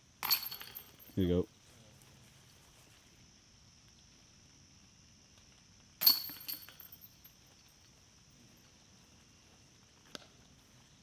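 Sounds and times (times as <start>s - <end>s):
disc hitting basket chains: 0.1s - 1.3s, 6.0s - 7.4s
chains jingling: 0.2s - 1.2s, 6.0s - 7.3s.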